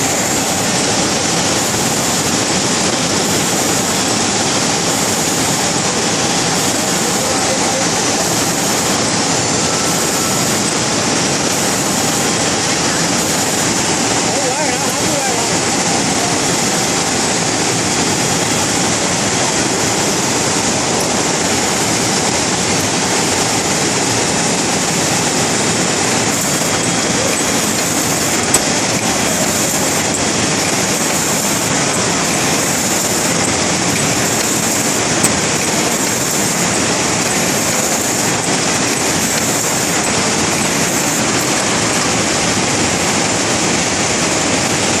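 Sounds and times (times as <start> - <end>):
sharp clicks: 0.0 - 14.2, 24.8 - 42.3
packing machine running: 0.0 - 45.0.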